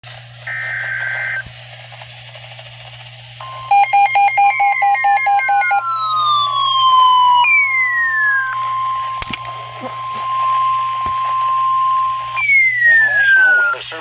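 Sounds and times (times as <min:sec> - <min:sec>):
radio static: 0:00.3 - 0:02.7, 0:03.4 - 0:14.0
rapid beeping: 0:03.4 - 0:09.0, 0:12.4 - 0:14.0
steady warning alarm tone: 0:03.4 - 0:14.0
harsh electronic data screech: 0:03.7 - 0:08.6, 0:12.4 - 0:14.0
falling siren-like sweeps: 0:03.7 - 0:09.1, 0:10.1 - 0:14.0.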